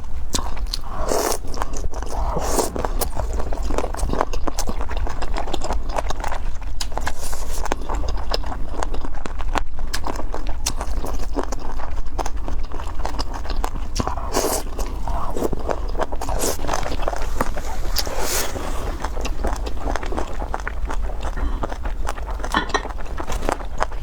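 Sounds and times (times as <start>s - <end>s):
person chewing food: 0.0s - 24.0s
steady low hum: 14.0s - 24.0s.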